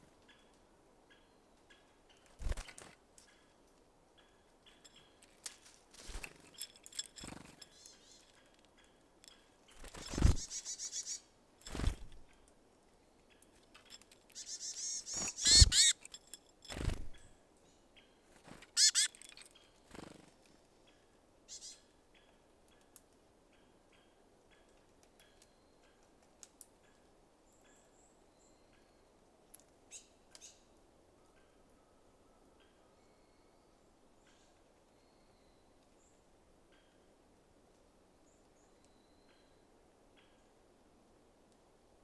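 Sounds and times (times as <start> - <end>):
bird wings thumping and fluttering: 2.4 - 3.0, 9.8 - 10.6, 11.6 - 12.2, 16.7 - 17.2
birds chirping: 9.7 - 11.3, 14.3 - 16.1, 18.7 - 19.4.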